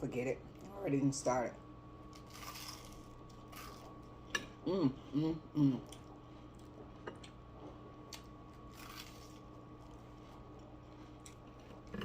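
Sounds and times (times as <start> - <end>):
steady low hum: 0.0 - 12.0
chewing fried food: 5.8 - 12.0.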